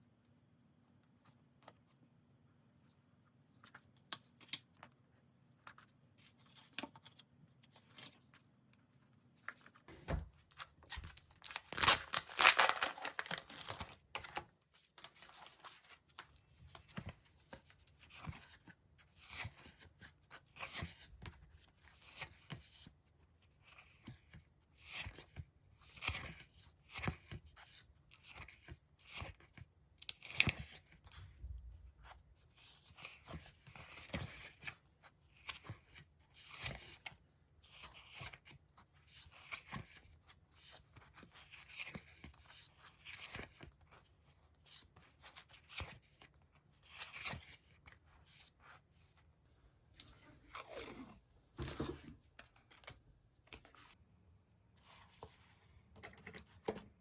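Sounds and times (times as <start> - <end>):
paper rustling and crackling: 9.4 - 16.2.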